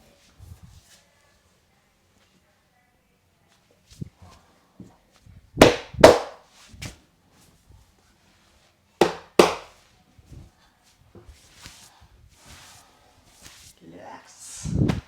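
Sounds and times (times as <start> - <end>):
hands slapping head: 5.6 - 7.0, 9.0 - 9.8, 14.8 - 15.0.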